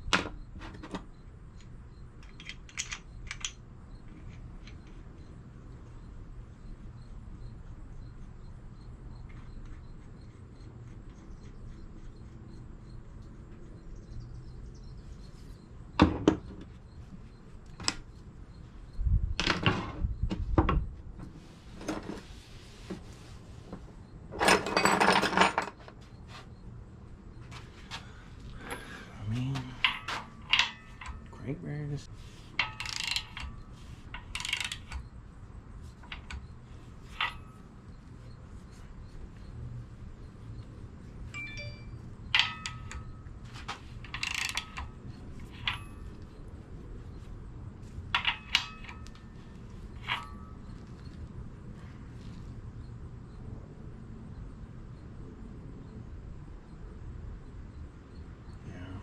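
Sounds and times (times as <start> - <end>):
metal engine parts clattering: 24.4 - 25.8, 28.6 - 31.4, 48.2 - 49.4
sharp metal clanks: 29.6 - 31.4, 37.1 - 37.7, 41.4 - 43.3, 48.2 - 50.8.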